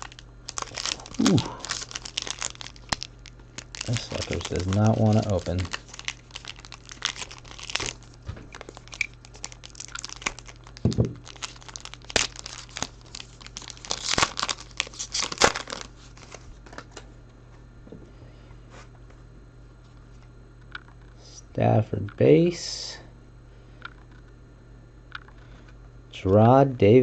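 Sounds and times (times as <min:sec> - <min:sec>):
crinkly wrapper tearing: 0:00.0 - 0:17.0.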